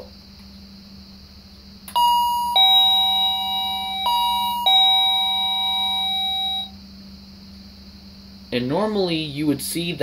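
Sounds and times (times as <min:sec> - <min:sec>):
electronic door chime ding-dong: 0:01.9 - 0:06.8.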